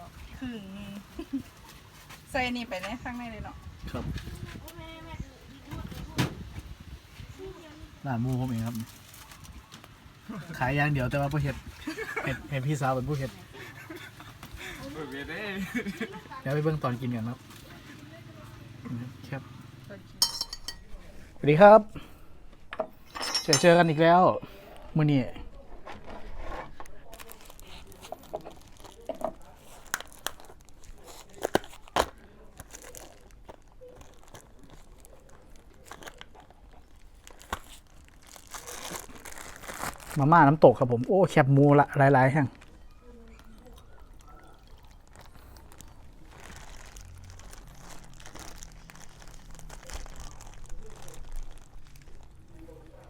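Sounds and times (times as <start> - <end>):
plastic packets crinkling: 27.0 - 40.4, 42.5 - 52.9.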